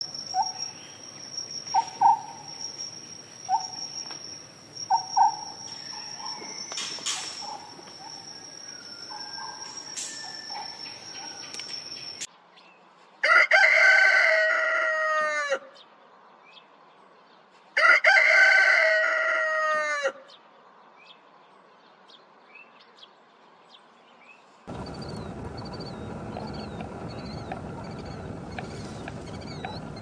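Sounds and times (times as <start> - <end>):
high-pitched insect trill: 0.0 - 12.3.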